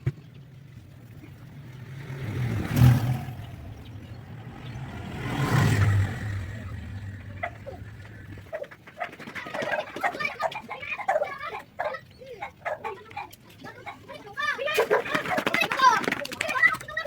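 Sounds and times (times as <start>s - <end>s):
vehicle engine running: 0.0s - 9.0s.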